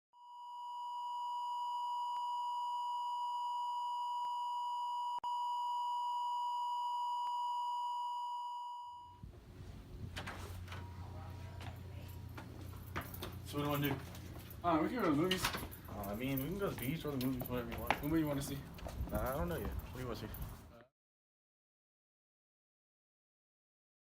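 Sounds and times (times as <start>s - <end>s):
high electronic beep tone: 0.4s - 9.1s.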